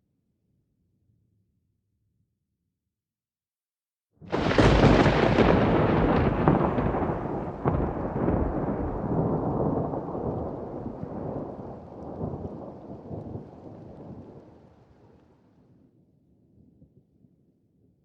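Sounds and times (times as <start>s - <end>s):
sharp thunder cracks: 4.3s - 14.5s
thunder rolling rumble: 4.3s - 14.9s.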